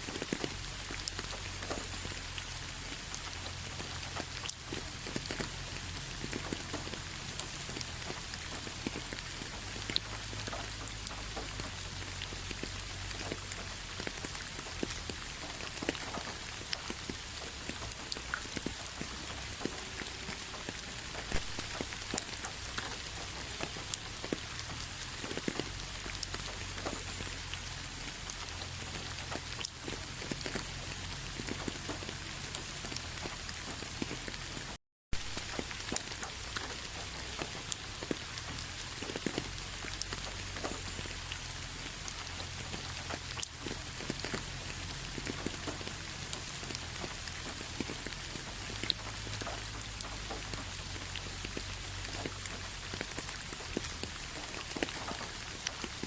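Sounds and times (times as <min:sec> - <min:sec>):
raindrops ticking: 0:00.0 - 0:56.0
steady rain hiss: 0:00.0 - 0:56.0.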